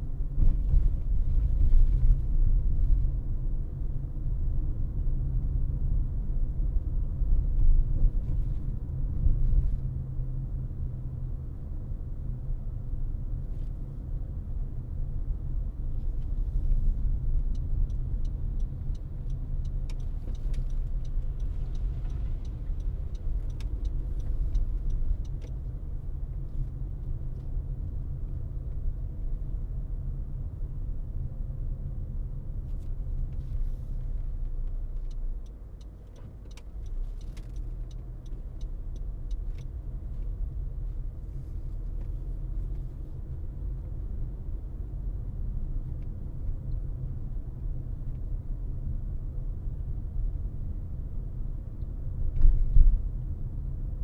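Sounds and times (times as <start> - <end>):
car road and engine rumble: 0.0 - 54.0
faint ticks: 17.4 - 25.6, 34.6 - 40.3.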